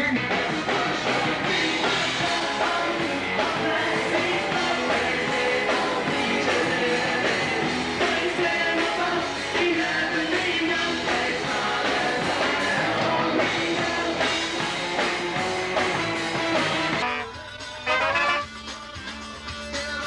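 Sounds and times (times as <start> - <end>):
person singing: 0.0 - 15.5
rock band playing: 0.0 - 20.0.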